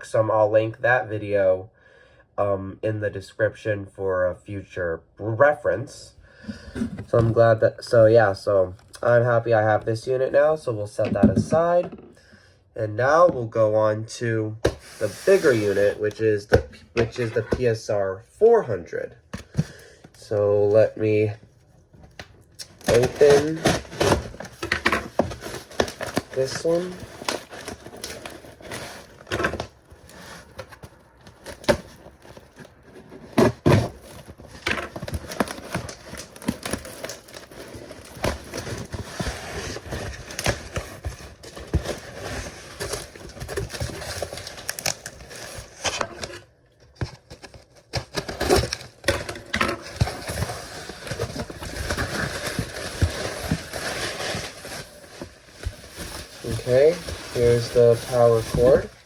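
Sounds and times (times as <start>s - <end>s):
cardboard box packing rustling: 14.6s - 16.0s, 22.1s - 59.0s.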